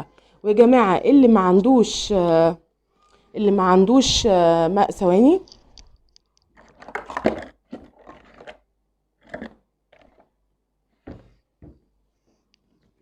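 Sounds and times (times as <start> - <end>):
kitchen containers knocking and scraping: 6.6 - 8.6.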